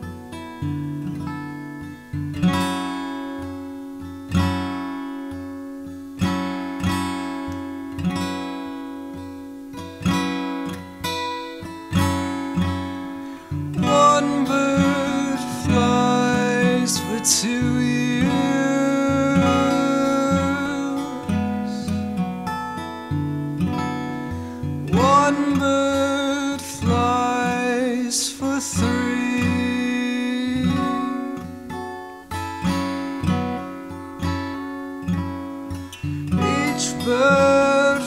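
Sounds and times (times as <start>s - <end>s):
acoustic guitar: 0.0s - 38.0s
man singing: 13.8s - 22.0s, 24.8s - 31.6s, 36.3s - 38.0s.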